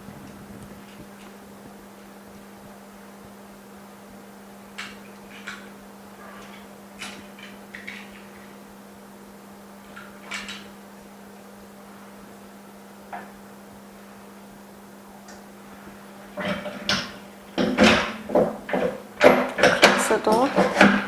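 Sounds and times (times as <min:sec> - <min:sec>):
steady low hum: 0:00.0 - 0:21.0
parts clicking and knocking: 0:16.4 - 0:21.0.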